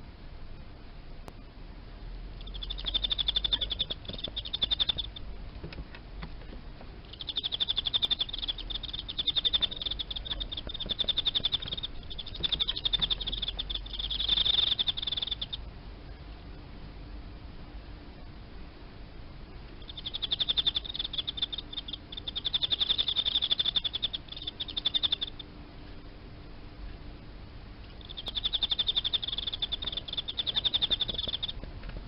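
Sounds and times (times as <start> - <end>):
cricket chirping: 2.4 - 5.4, 7.0 - 16.4, 19.8 - 25.6, 27.2 - 32.0.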